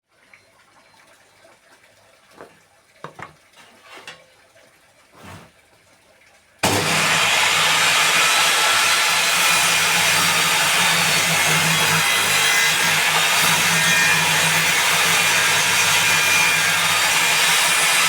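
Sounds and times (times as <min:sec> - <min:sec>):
table saw running: 0:06.6 - 0:18.0.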